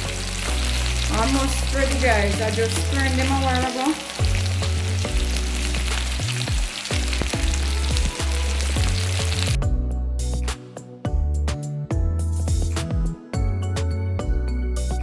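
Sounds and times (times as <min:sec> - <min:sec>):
chicken sizzling in hot oil: 0:00.0 - 0:09.6
background music with bass: 0:00.0 - 0:15.0.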